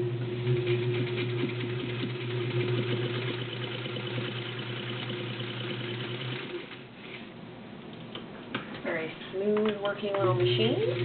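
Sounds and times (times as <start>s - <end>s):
sewing machine running: 0.0s - 6.9s, 10.4s - 11.0s.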